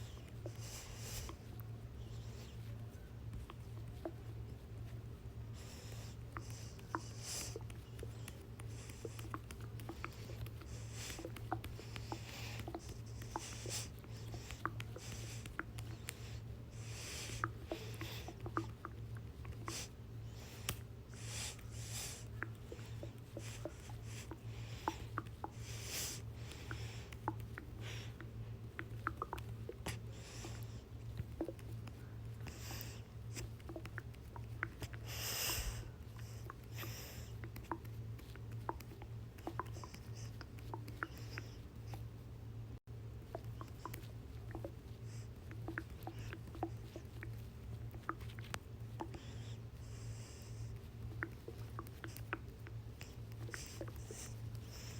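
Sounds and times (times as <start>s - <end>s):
steady low hum: 0.0s - 54.9s
stomach gurgling: 5.9s - 19.9s, 22.2s - 42.1s, 43.2s - 49.7s.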